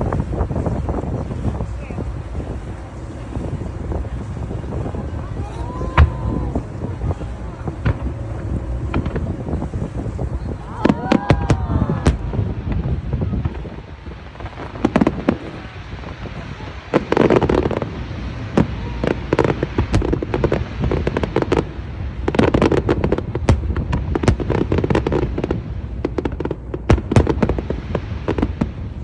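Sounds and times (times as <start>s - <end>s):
firework bangs and crackles: 0.0s - 29.0s
low rumble of firework booms: 0.0s - 29.0s.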